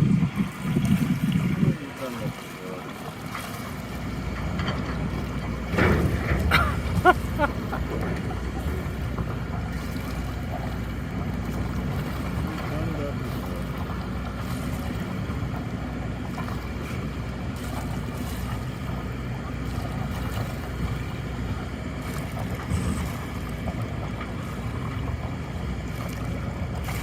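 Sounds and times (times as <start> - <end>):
wind on microphone: 0.0 - 2.4
boat engine humming: 0.0 - 27.0.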